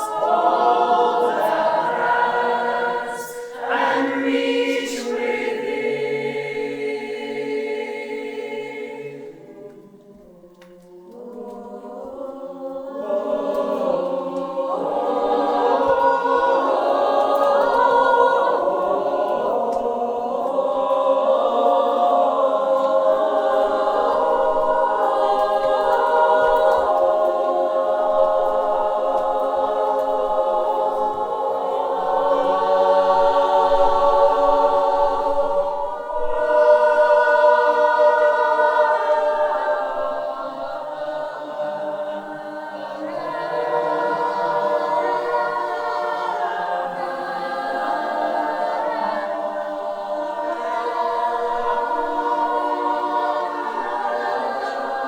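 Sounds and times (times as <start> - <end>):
choir singing chords: 0.0 - 55.0.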